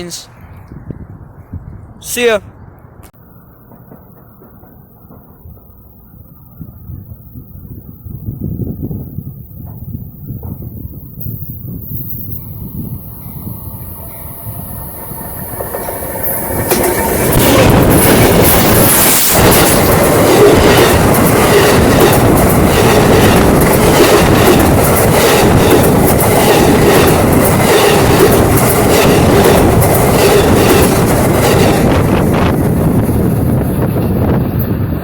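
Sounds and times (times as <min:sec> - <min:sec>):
train rumbling past: 0:02.6 - 0:35.0
wheels clicking over rail joints: 0:15.2 - 0:18.6.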